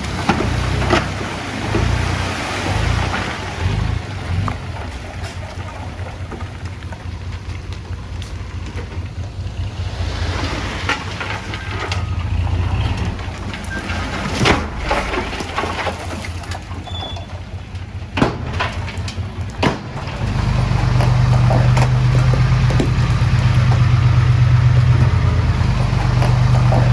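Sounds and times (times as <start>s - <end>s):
bulldozer engine running: 0.0s - 26.9s
sharp metal knocks and clatter: 8.2s - 26.9s.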